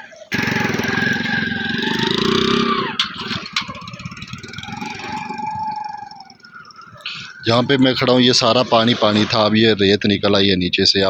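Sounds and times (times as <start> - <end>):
vehicle engine passing by: 0.3 - 7.9.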